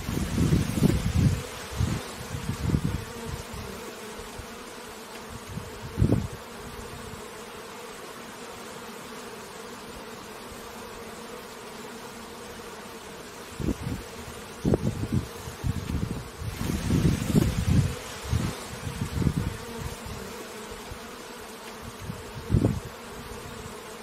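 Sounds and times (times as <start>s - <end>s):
honeybees buzzing: 0.0s - 24.0s.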